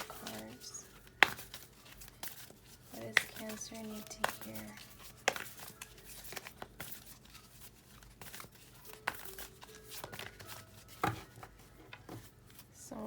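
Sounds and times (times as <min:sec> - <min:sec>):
cards being shuffled: 0:00.0 - 0:12.8
card snap: 0:03.1 - 0:07.0.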